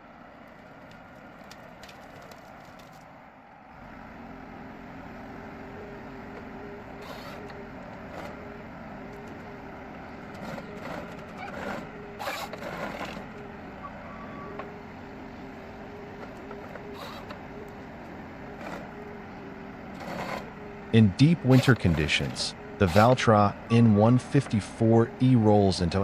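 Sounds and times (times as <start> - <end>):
faint whine: 0.0 - 26.0
tractor engine and hydraulics: 0.0 - 26.0
wood cracking and snapping: 0.8 - 3.1.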